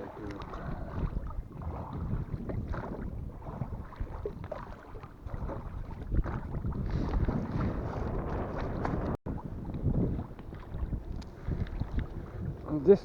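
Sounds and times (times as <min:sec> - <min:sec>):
water splashing: 0:00.0 - 0:13.0
wind buffeting microphone: 0:00.0 - 0:13.0
small knocks from a boat: 0:03.9 - 0:07.7.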